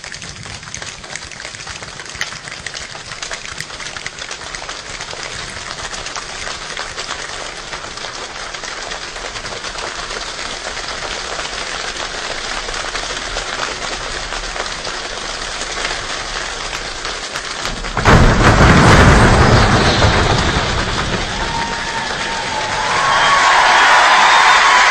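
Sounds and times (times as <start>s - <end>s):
hands clapping and snapping: 0.0s - 18.0s.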